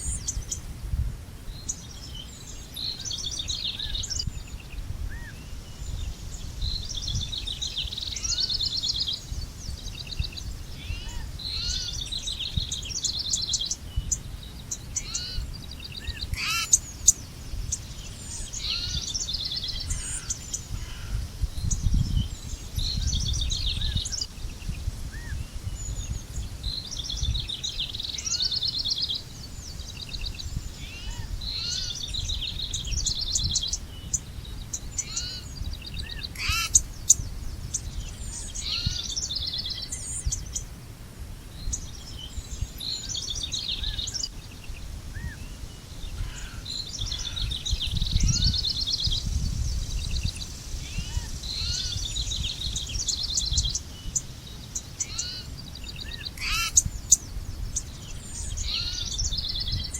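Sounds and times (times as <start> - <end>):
birds chirping: 0.0 - 0.7, 1.5 - 40.8, 41.4 - 59.9
bird trilling: 10.9 - 12.0, 16.0 - 16.8, 35.0 - 36.8, 56.1 - 56.9.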